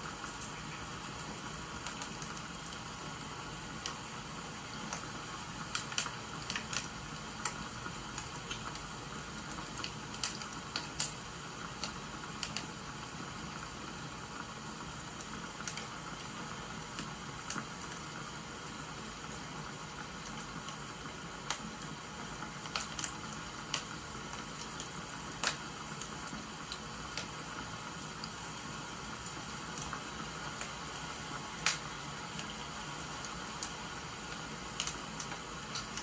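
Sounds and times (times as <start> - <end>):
rain falling: 0.0 - 36.0
wood fire crackling: 0.0 - 36.0.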